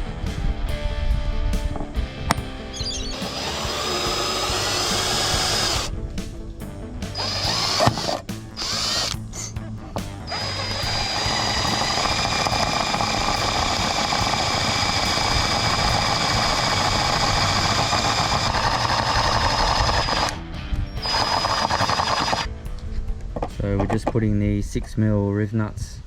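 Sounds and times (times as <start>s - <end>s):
power drill whining: 2.7s - 5.9s, 7.2s - 9.5s, 10.3s - 20.4s, 21.0s - 22.5s.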